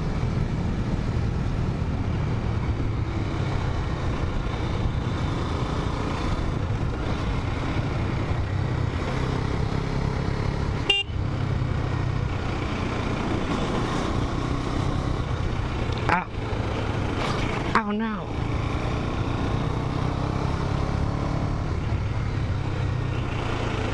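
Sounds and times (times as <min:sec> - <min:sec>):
wind and road noise: 0:00.0 - 0:23.9
horn toot: 0:10.8 - 0:11.2.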